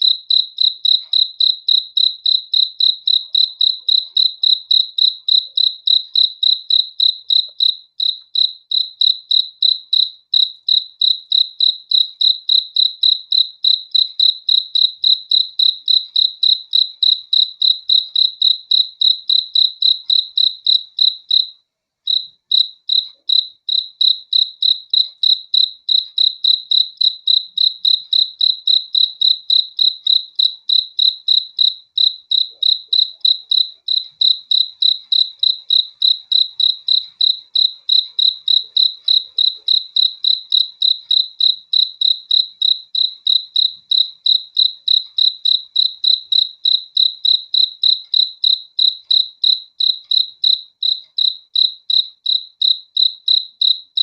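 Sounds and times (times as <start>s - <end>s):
cricket chirping: 0.0s - 54.0s.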